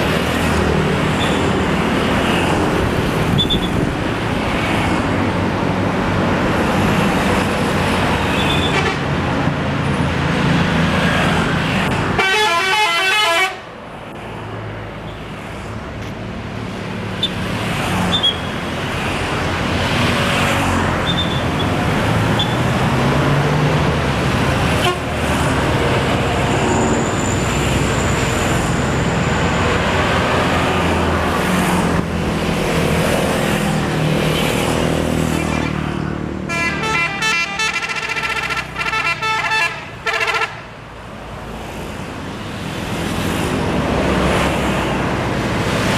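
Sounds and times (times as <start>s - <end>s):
bus engines running: 0.0s - 45.9s
multi-tone bus horn: 8.4s - 9.1s, 12.1s - 13.6s, 24.8s - 25.2s, 36.5s - 40.7s.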